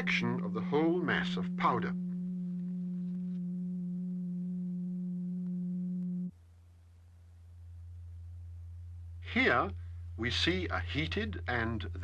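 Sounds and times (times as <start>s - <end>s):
pure electronic tone: 0.0s - 6.4s
lower steady tone: 0.0s - 12.0s.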